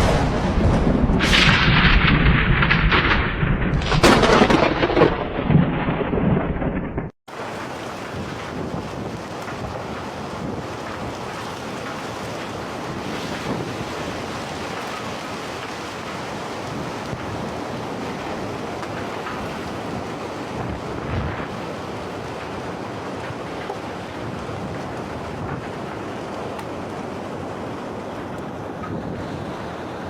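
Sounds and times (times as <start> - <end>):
low bump: 0.0 - 7.2
water rushing: 7.3 - 30.0
wind buffeting microphone: 7.9 - 30.0.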